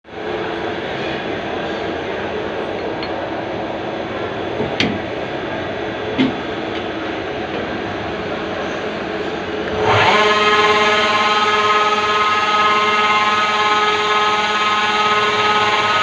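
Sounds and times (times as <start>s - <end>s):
lathe running with whirring hum: 0.1s - 16.0s.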